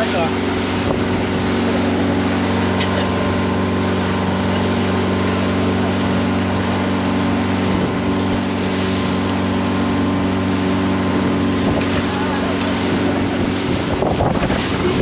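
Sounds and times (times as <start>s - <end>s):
motorboat engine running: 0.0s - 15.0s
water noise: 0.0s - 15.0s
wind noise: 0.5s - 2.2s, 7.6s - 8.7s, 11.0s - 15.0s.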